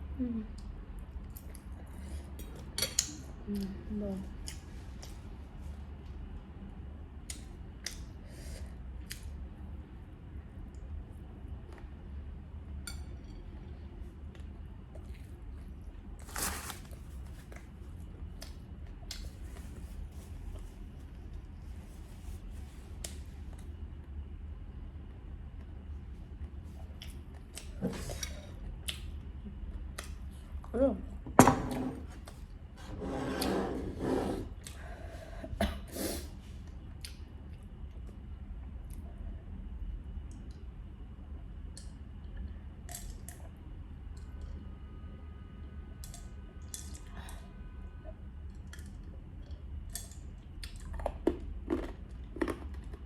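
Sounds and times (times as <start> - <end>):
steady low hum: 0.0 - 53.0
soft chewing: 0.4 - 5.8, 13.4 - 23.8, 25.6 - 30.7, 48.5 - 53.0
person sniffing: 35.9 - 36.4.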